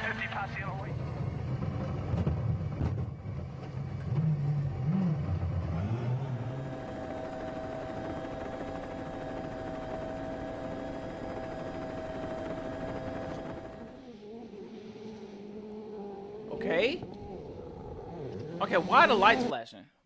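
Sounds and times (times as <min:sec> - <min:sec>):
rally car engine revving: 0:01.2 - 0:06.6, 0:15.0 - 0:19.5.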